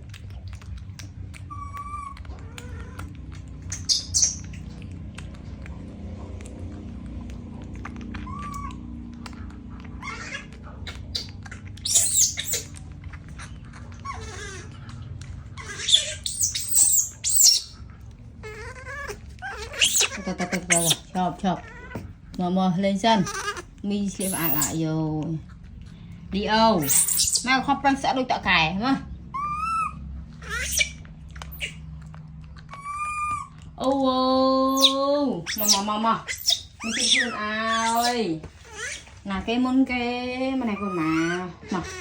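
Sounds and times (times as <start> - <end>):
steady low hum: 0.0 - 42.0
baby monkey squealing: 1.5 - 4.7, 8.2 - 9.4, 10.0 - 22.1, 23.0 - 24.8, 26.8 - 27.8, 29.3 - 31.9, 32.6 - 33.6, 34.6 - 39.2, 40.5 - 42.0.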